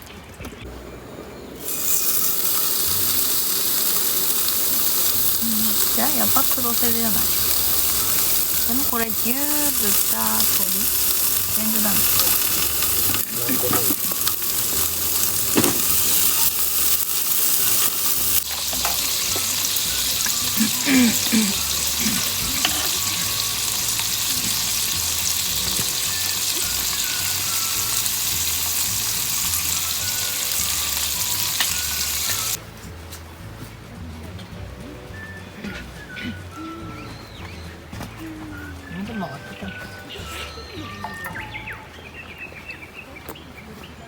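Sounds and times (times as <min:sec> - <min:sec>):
meat sizzling in a pan: 0:01.6 - 0:32.6.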